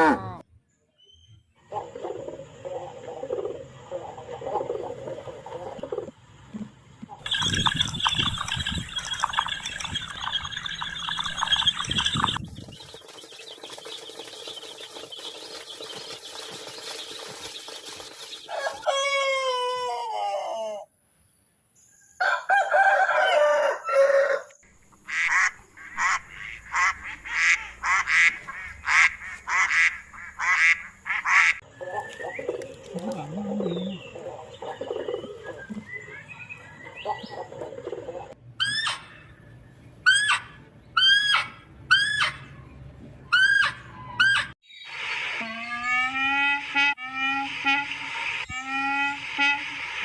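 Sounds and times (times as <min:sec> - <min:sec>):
rooster crowing: 0:18.5 - 0:20.9, 0:22.2 - 0:24.6.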